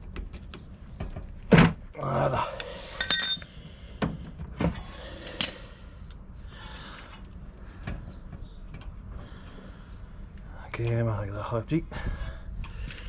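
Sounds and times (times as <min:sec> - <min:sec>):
tools knocking and clicking on metal: 0:03.0 - 0:03.5.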